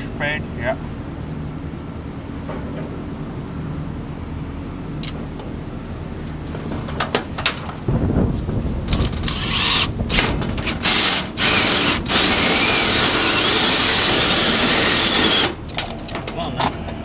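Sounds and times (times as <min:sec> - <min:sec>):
power drill boring: 0:10.8 - 0:15.6.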